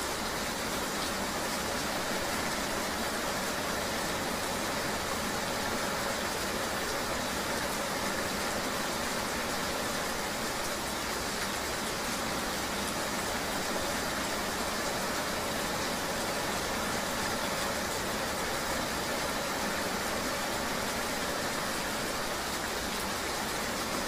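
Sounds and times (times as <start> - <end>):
rain and road hiss: 0.0 - 24.0.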